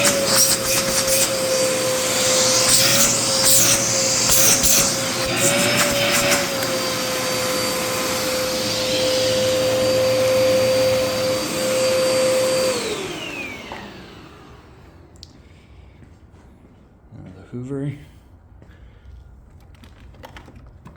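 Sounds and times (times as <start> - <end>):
vacuum cleaner motor whine: 0.0 - 15.2.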